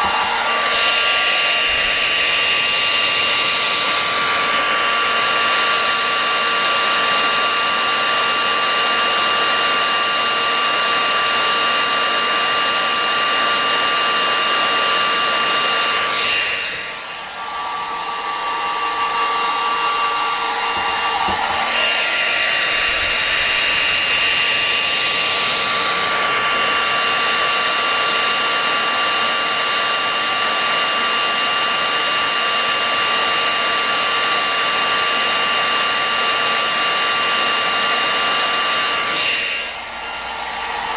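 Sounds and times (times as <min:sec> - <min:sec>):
hot air gun rushing air: 0:00.0 - 0:09.6, 0:12.9 - 0:29.5
high fan whine: 0:00.0 - 0:40.9.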